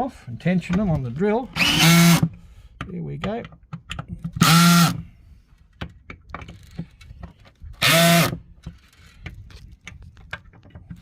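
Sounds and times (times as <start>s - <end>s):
power drill driving a screw: 1.6s - 2.3s, 4.4s - 5.0s, 7.8s - 8.4s.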